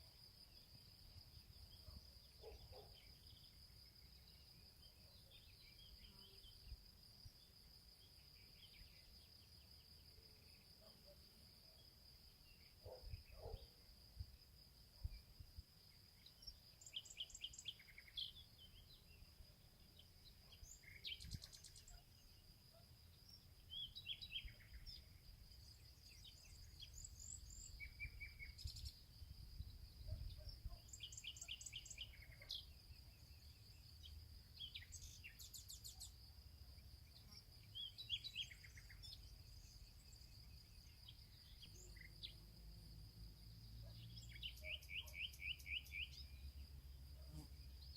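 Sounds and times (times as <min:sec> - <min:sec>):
bird chirps and calls: 0:30.0 - 0:32.7, 0:43.9 - 0:46.2.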